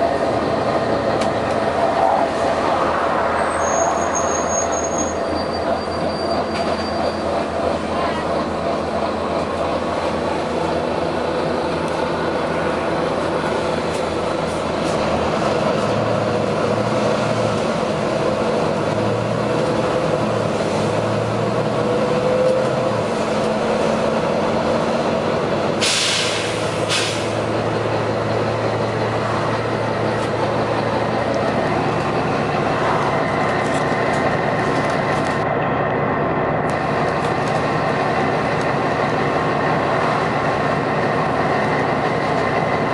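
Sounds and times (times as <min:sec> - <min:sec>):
bus engine running: 0:00.0 - 0:42.9
air hiss: 0:25.8 - 0:27.4.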